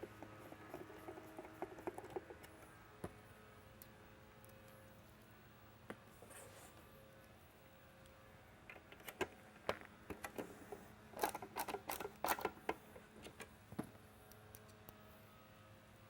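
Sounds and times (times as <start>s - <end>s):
plastic parts clicking and tapping: 0.0s - 3.2s, 8.7s - 13.9s.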